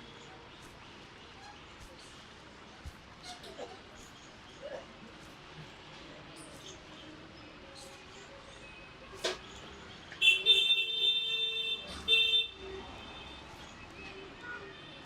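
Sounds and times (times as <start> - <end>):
vehicle horn honking: 10.2 - 12.6.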